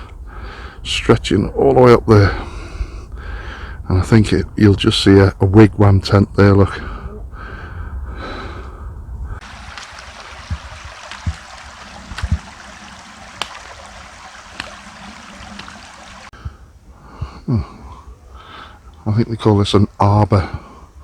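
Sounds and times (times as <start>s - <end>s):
wind rumble on microphone: 0.0s - 18.3s
stream flowing over rocks: 9.4s - 16.4s.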